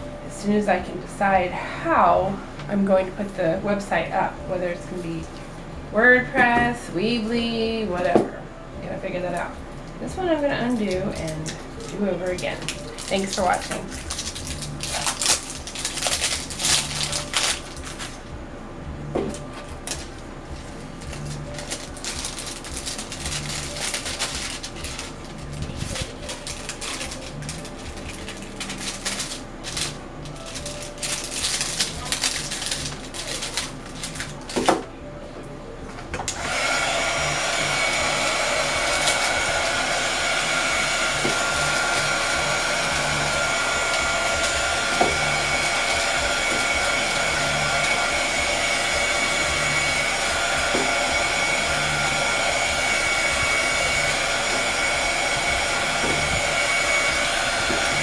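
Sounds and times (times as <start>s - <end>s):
plastic bag crinkling: 12.6s - 18.2s, 19.8s - 34.7s
heat gun blowing: 36.3s - 58.0s.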